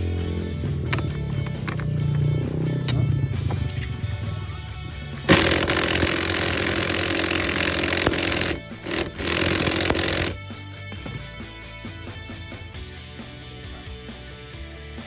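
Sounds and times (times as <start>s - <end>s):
power tool running: 0.0s - 4.4s, 5.1s - 10.4s
background music: 0.0s - 15.0s.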